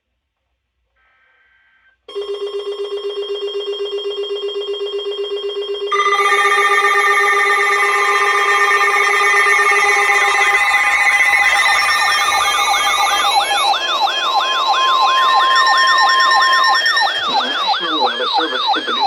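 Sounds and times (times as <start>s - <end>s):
higher steady alarm tones: 2.1s - 19.0s
pulsing low buzzing tone: 6.0s - 19.0s.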